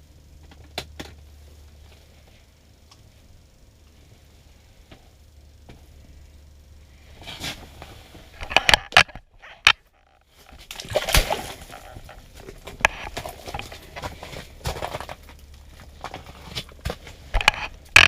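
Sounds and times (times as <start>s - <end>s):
water splashing and sloshing: 10.3s - 15.4s.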